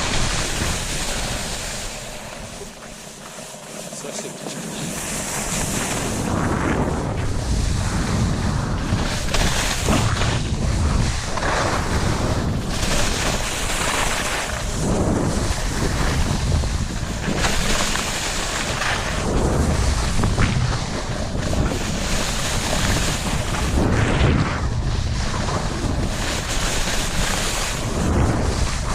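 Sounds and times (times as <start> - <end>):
wind rushing over microphone: 0.0 - 3.2, 3.8 - 28.9
skis scraping on snow: 0.0 - 28.9.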